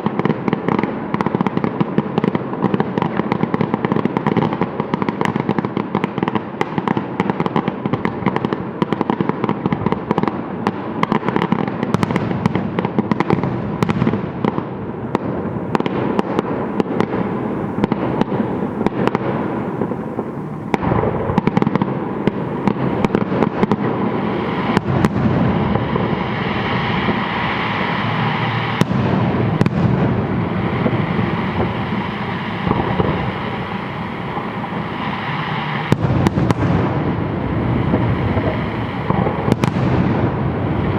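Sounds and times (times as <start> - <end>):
fireworks bangs and crackling: 0.0 - 40.9.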